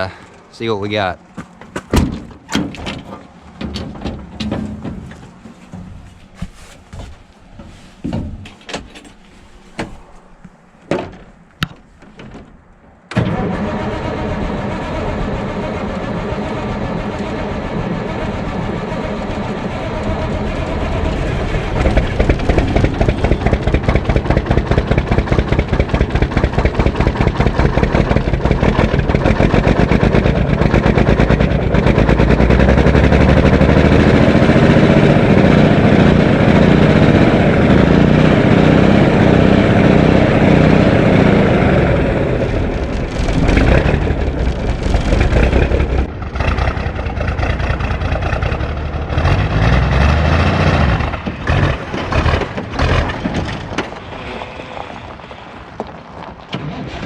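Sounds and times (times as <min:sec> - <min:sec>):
diesel engine running and revving: 0:13.2 - 0:57.0.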